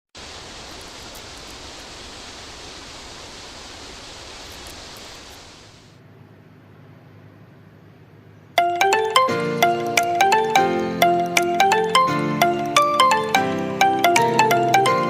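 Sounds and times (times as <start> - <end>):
steady rushing hiss: 0.1 - 6.0.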